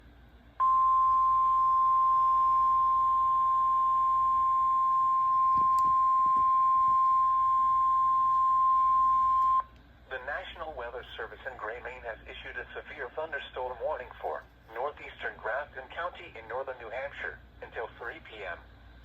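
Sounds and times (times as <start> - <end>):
steady high-pitched alarm tone: 0.6 - 9.6.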